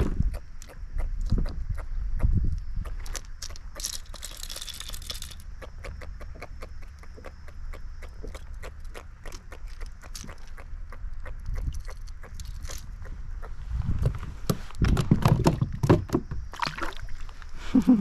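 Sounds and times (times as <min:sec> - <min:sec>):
fishing gear clicking: 0:03.0 - 0:05.5.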